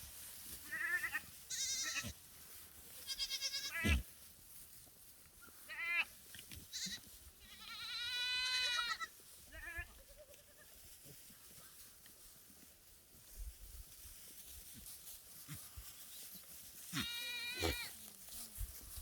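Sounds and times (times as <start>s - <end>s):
goats bleating: 0.6s - 2.2s, 3.0s - 4.0s, 6.7s - 10.8s, 16.8s - 18.0s.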